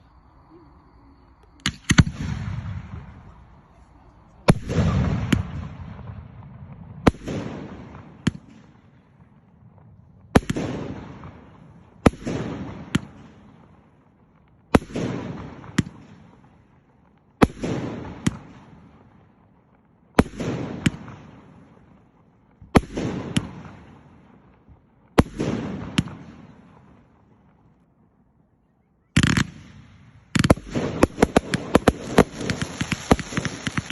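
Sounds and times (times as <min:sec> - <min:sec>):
firework shells bursting: 0:29.2 - 0:33.9.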